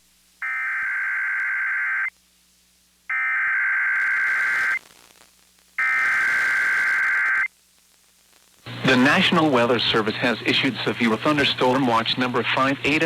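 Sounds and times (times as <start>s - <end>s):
digital data tone bursts: 3.1s - 4.8s, 5.8s - 7.5s.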